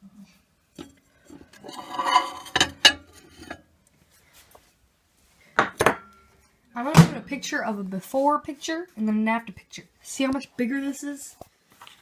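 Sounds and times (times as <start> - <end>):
dishware rubbing and clinking: 0.8 - 3.6.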